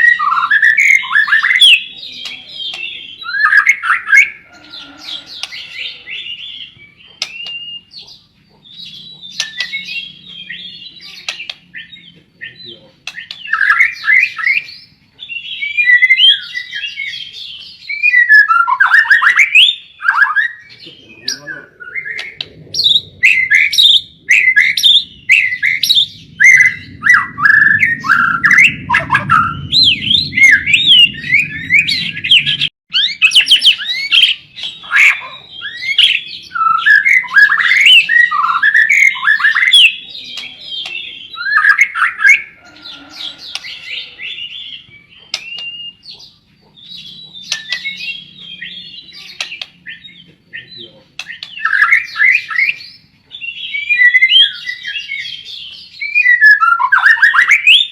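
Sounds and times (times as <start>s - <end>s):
bird singing whistled phrases: 0.0s - 4.4s, 5.2s - 7.9s, 8.9s - 46.1s, 46.9s - 57.9s
low hum: 21.9s - 32.7s.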